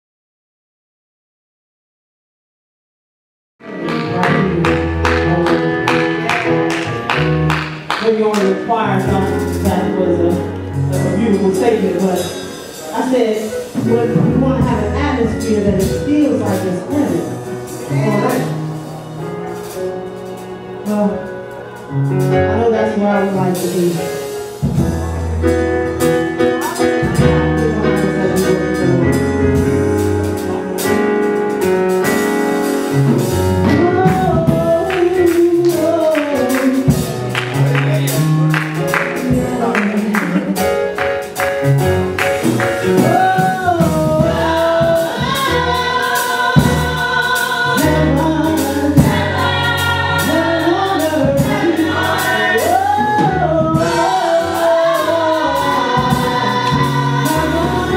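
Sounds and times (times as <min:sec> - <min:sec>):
walking bass line: 0:13.8 - 0:19.2, 0:33.0 - 0:57.9
drum and cymbal strikes: 0:40.3 - 0:57.9
choir singing: 0:42.8 - 0:57.9.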